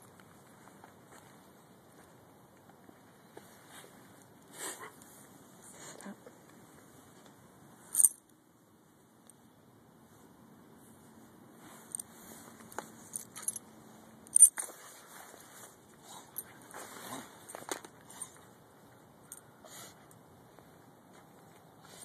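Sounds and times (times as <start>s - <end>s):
dog collar tags jingling: 7.9s - 8.2s, 13.0s - 13.7s, 14.3s - 14.6s.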